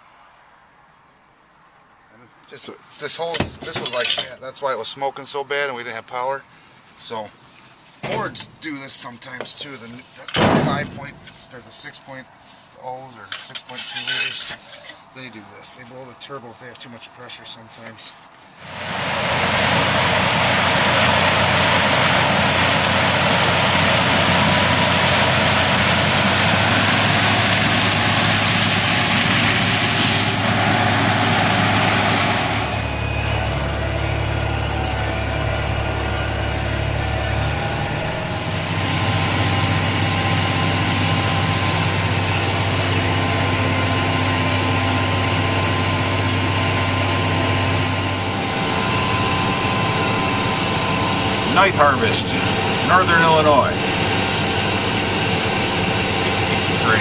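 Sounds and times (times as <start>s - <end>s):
heavy machinery engines running: 18.6s - 57.0s.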